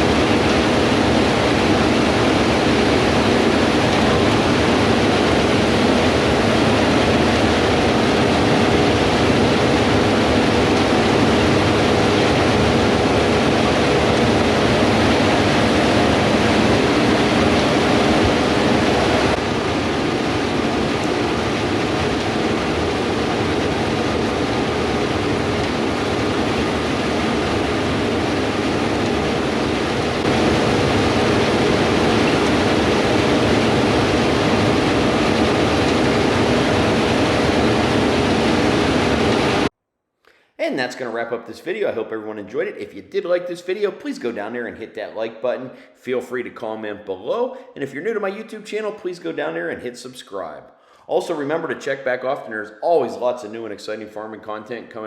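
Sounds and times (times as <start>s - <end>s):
farm machinery engine running: 0.0s - 39.7s
wind on microphone: 0.0s - 39.7s.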